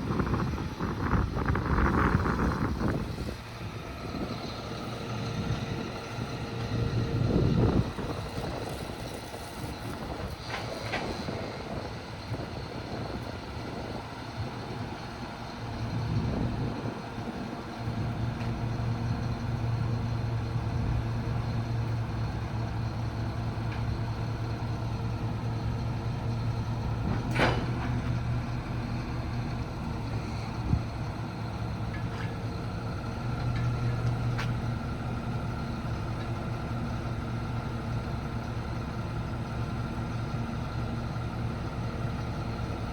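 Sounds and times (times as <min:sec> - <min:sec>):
diesel engine running: 0:00.0 - 0:42.9.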